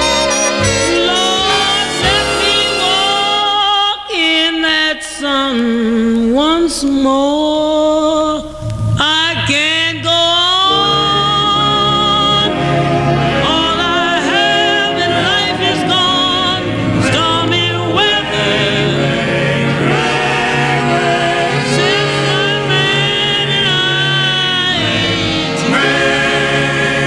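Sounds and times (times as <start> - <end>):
musical accompaniment: 0.0 - 3.8, 10.6 - 27.0
person singing with vibrato: 0.0 - 27.0.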